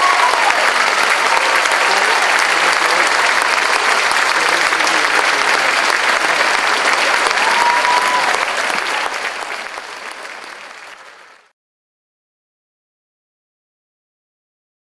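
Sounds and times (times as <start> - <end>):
audience applauding: 0.0 - 11.5.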